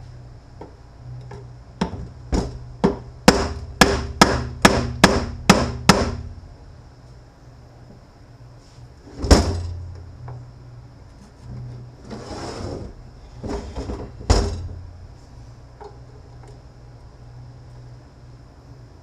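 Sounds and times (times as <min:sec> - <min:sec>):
sharp metal knocks: 0:01.8 - 0:06.3.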